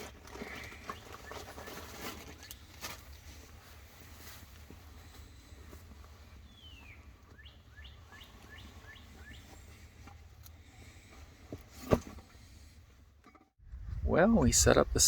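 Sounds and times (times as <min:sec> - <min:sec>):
songbird whistling: 0:06.5 - 0:09.4.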